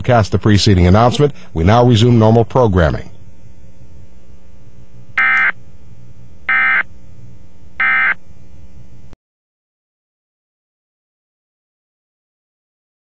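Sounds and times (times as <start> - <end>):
steady hum: 0.0 - 9.2
harsh digital data tones: 5.2 - 5.6, 6.5 - 6.9, 7.8 - 8.2.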